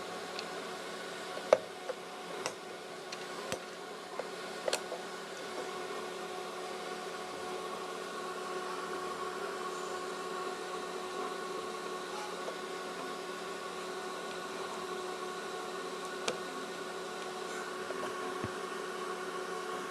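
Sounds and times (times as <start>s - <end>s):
steady mechanical hum: 0.0s - 19.9s.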